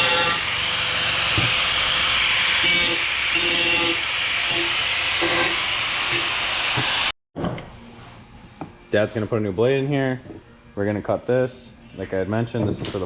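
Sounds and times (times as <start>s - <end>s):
power saw cutting metal: 0.0s - 7.1s.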